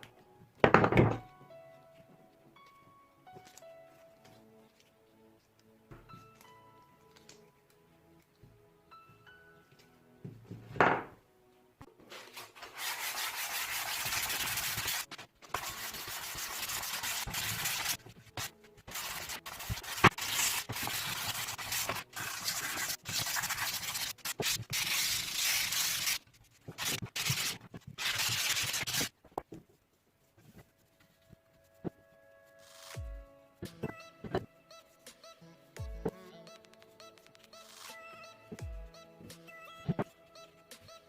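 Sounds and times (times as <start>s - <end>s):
sandpaper rubbing on wood: 12.6s - 26.2s, 26.8s - 29.1s.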